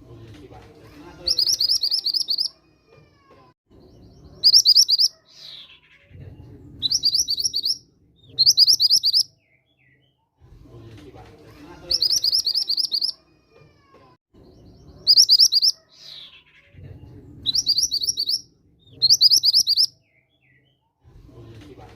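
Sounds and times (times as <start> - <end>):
bird chirping rapidly: 1.2 - 2.6, 3.9 - 6.1, 6.8 - 9.6, 11.9 - 13.2, 14.5 - 16.7, 17.4 - 20.3.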